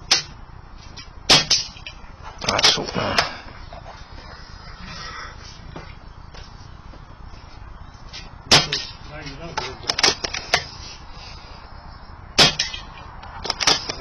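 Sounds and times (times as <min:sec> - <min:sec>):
air rifle shots: 0:08.5 - 0:09.0, 0:09.8 - 0:10.7, 0:12.4 - 0:14.0.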